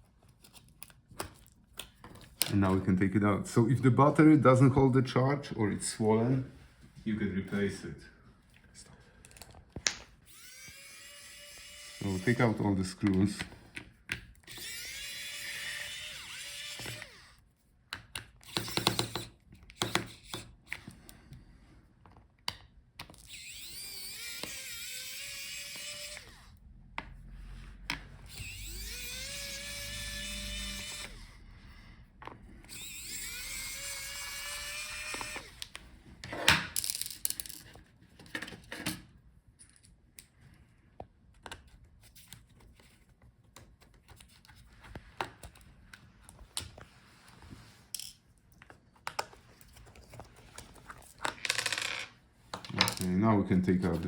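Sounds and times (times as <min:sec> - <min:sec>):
electric screwdriver motor whine: 0:10.3 - 0:12.5, 0:14.5 - 0:17.4, 0:18.4 - 0:20.4, 0:23.2 - 0:26.6, 0:28.2 - 0:31.4, 0:32.6 - 0:35.8
screwdriver and screws clicking: 0:18.0 - 0:20.9, 0:22.4 - 0:26.4.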